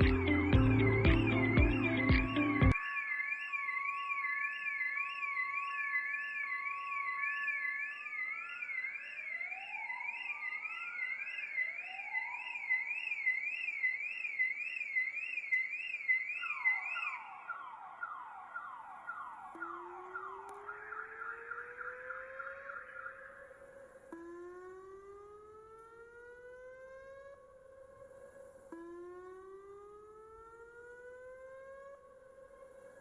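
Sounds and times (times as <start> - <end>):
electronic siren warbling: 0.0 - 33.0.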